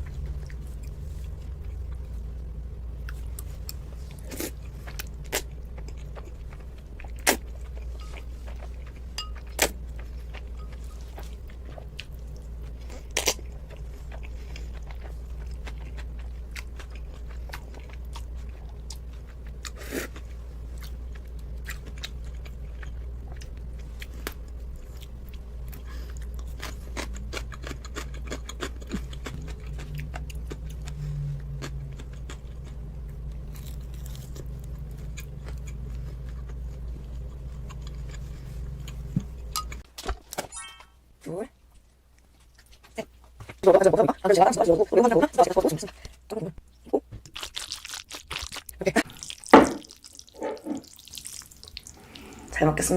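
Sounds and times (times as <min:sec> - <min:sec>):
steady low hum: 0:00.0 - 0:52.9
person chewing noodles: 0:02.9 - 0:39.8, 0:47.2 - 0:52.6.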